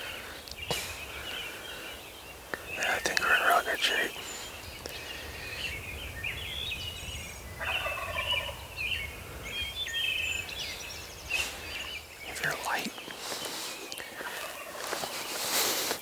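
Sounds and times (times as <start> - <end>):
high bird calls: 0.0 - 16.0
turkey gobbling: 7.6 - 8.8, 14.2 - 15.1.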